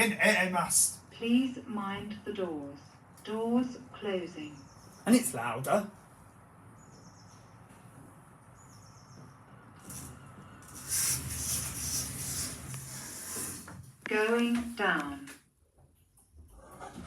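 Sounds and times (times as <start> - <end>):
lift doors closing: 9.3 - 14.8.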